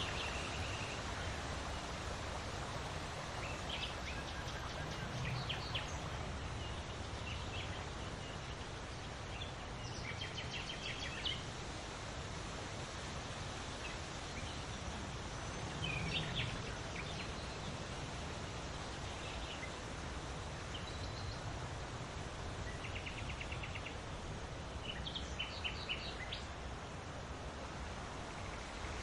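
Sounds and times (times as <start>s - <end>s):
small birds chirping: 0.0s - 7.8s
steady wind: 0.0s - 29.0s.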